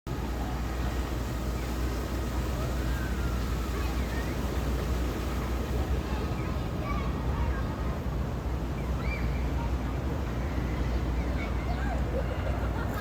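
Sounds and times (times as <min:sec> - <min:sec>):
low outdoor rumble: 0:00.1 - 0:13.0.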